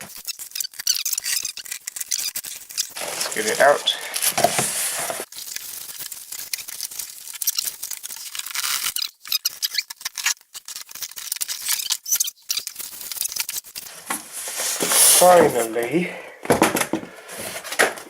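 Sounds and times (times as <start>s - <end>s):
cardboard box rustling and scraping: 3.0s - 5.3s, 13.9s - 15.8s.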